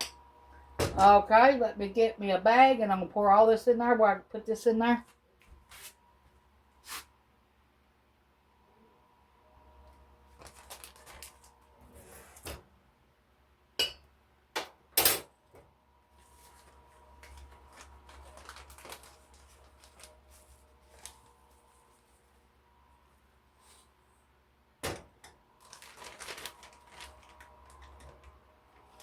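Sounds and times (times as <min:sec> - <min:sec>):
plastic bag rustling: 0:10.3 - 0:12.4, 0:16.2 - 0:22.4, 0:25.6 - 0:29.0
dishes clinking: 0:13.8 - 0:14.1.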